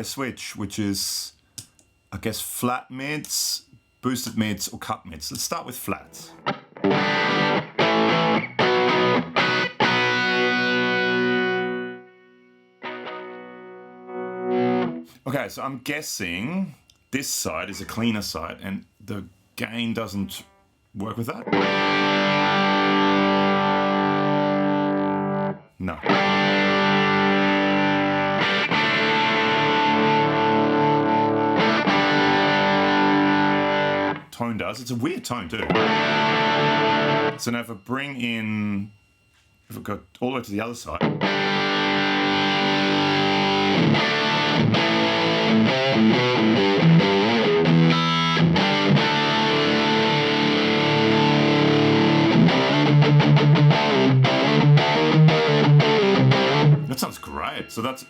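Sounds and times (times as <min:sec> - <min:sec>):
lightly distorted electric guitar chords: 0:05.9 - 0:15.2, 0:21.3 - 0:34.3, 0:35.5 - 0:37.5, 0:41.0 - 0:58.0.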